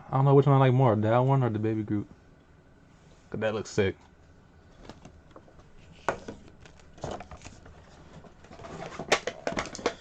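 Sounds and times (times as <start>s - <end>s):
plastic packaging rustling: 4.7s - 10.0s.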